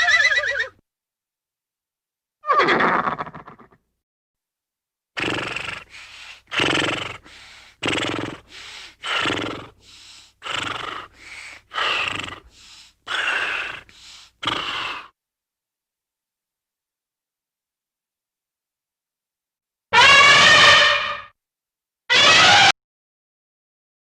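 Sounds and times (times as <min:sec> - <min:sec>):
animal call: 0:00.0 - 0:00.8, 0:02.4 - 0:03.8, 0:19.9 - 0:21.3, 0:22.1 - 0:22.7.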